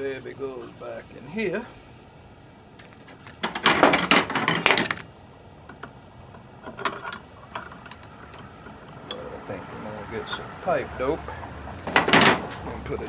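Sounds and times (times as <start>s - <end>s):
metal parts clicking and rattling: 2.8s - 9.3s, 11.8s - 12.6s.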